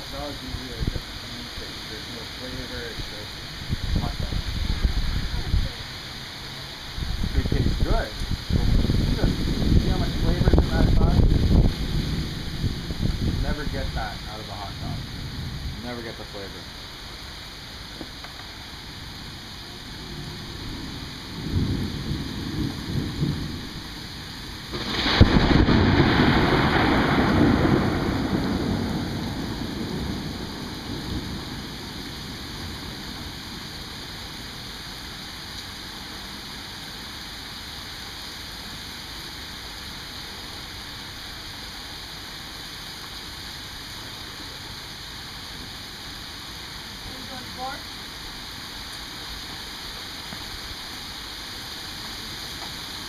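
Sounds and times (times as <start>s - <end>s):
thunder rumbling and cracking: 0.0s - 5.8s, 7.0s - 16.7s, 19.9s - 34.3s
rain hissing: 0.0s - 53.0s.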